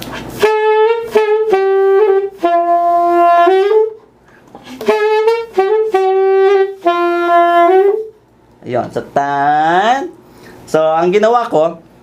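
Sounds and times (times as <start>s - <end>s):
alto saxophone playing: 0.0s - 8.3s.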